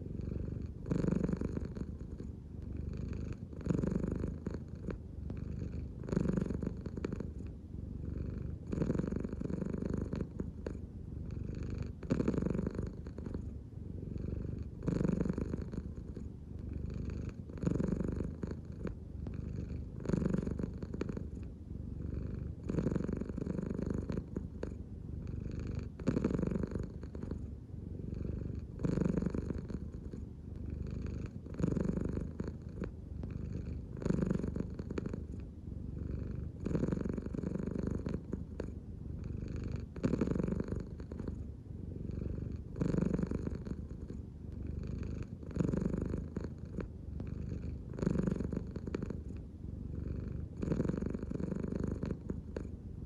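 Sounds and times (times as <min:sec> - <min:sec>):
cat purring: 0:00.0 - 0:53.0.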